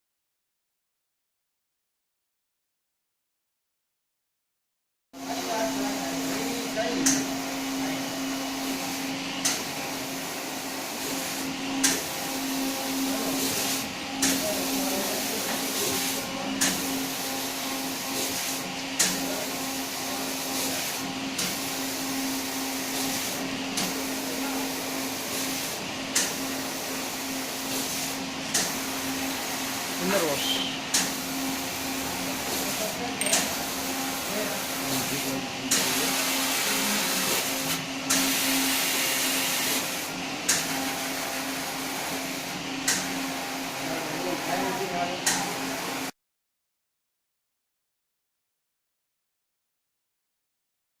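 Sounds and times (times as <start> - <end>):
hiss of wash jets: 7.4 - 46.1.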